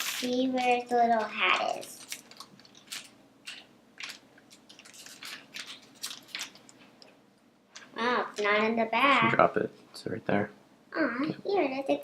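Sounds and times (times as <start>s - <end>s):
plastic packaging crinkling: 0.0s - 6.8s.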